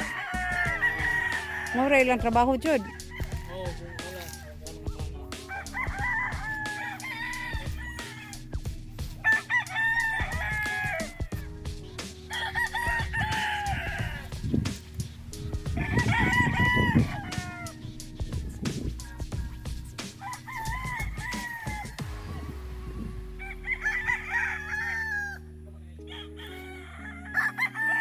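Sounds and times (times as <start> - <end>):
faint background music: 0.0 - 28.0
roosters crowing: 0.0 - 28.0.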